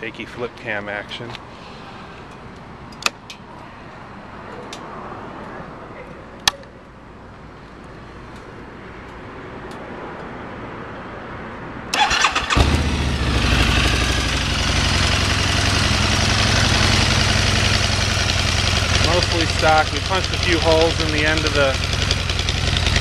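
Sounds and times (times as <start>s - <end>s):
motorcycle starter cranking: 11.9s - 12.9s
motorcycle engine idling: 12.0s - 23.0s.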